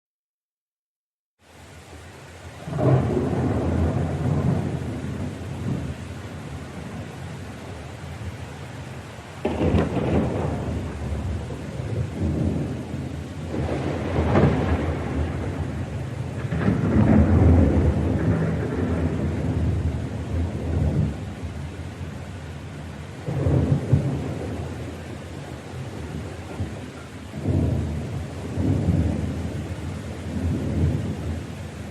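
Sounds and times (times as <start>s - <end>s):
steady rain: 1.4s - 31.9s
thunder claps and rolling peals: 2.6s - 7.0s, 9.4s - 21.7s, 23.2s - 31.6s.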